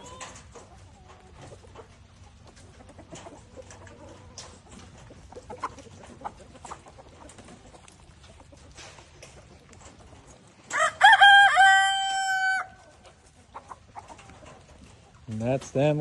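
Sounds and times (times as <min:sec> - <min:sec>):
chickens clucking: 0:00.0 - 0:16.0
rooster crowing: 0:10.7 - 0:12.8.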